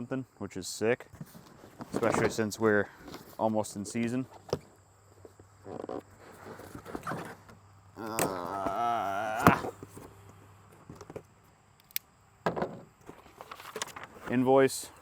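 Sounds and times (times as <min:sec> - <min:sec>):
cardboard rubbing squeal: 0:05.8 - 0:07.4, 0:08.0 - 0:09.8
cardboard snapping: 0:08.0 - 0:09.8.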